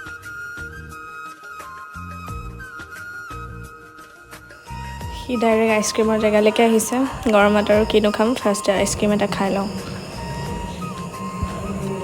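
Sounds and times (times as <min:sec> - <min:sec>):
steady beat: 0:04.6 - 0:12.0.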